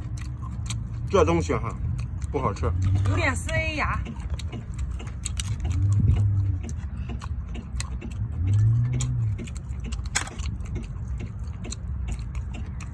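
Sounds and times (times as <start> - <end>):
steady low rumble: 0.0 - 12.9
mussel shells clicking: 4.0 - 12.9.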